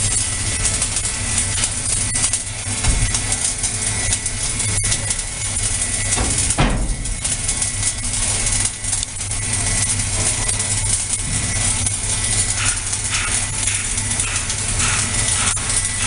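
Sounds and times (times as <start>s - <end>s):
welding arc crackling: 0.0s - 16.0s
low hum: 5.2s - 9.4s.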